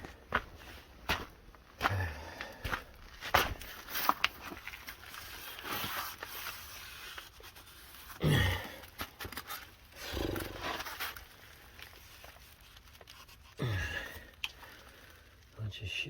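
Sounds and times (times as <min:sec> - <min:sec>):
man groaning: 0:08.2 - 0:08.8, 0:13.6 - 0:14.1.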